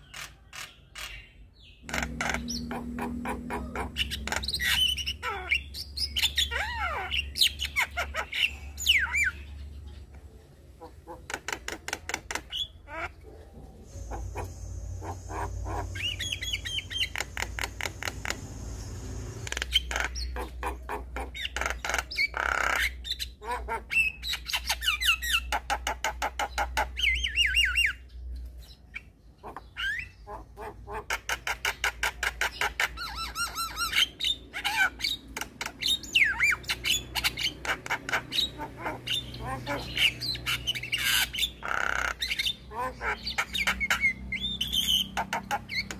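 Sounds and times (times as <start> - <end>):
myna bird singing: 0.0 - 45.9
low steady hum: 1.8 - 11.3, 12.8 - 21.1.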